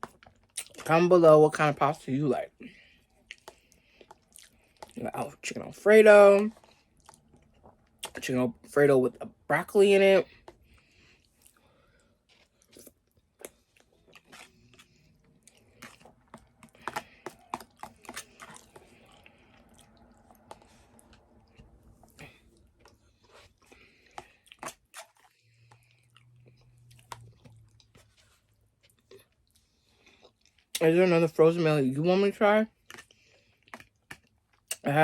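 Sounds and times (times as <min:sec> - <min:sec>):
chewing with wet mouth clicks: 0:00.0 - 0:00.9, 0:03.1 - 0:05.0, 0:06.5 - 0:08.2, 0:10.4 - 0:30.9, 0:32.8 - 0:34.9.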